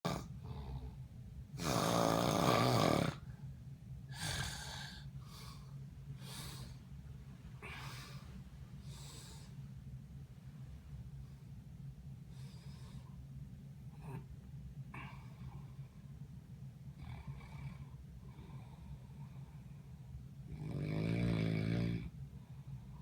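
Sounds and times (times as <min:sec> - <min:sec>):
person snoring: 0:01.6 - 0:03.2, 0:04.1 - 0:05.0, 0:20.5 - 0:22.1.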